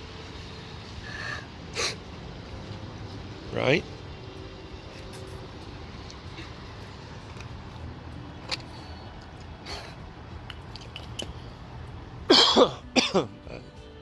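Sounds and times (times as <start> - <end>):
steady low rumble: 0.0 - 14.0
girl coughing: 12.3 - 13.4.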